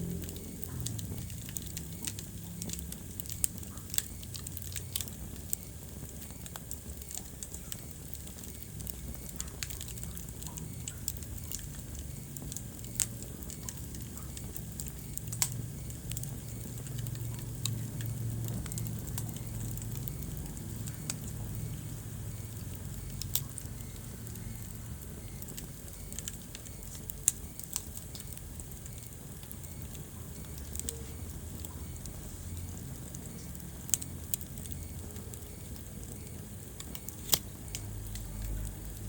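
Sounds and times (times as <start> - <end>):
fire crackling and popping: 0.0 - 39.0
flames rushing: 0.0 - 39.0.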